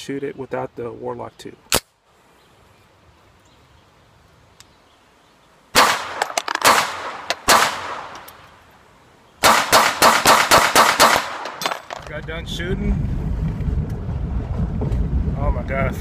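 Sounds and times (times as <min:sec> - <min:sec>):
faint gunshot cracks: 0:05.8 - 0:08.2
pistol shots with echo: 0:05.8 - 0:08.3, 0:09.4 - 0:11.7.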